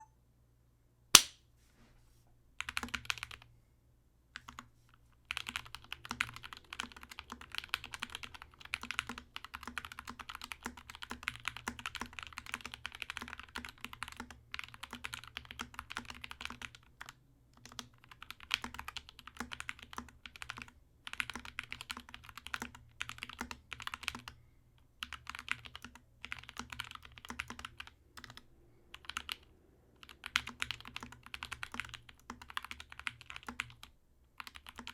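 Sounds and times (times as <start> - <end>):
sharp click: 1.2 - 1.4
typing on mechanical keyboard: 2.6 - 3.5, 4.4 - 24.4, 25.0 - 34.9.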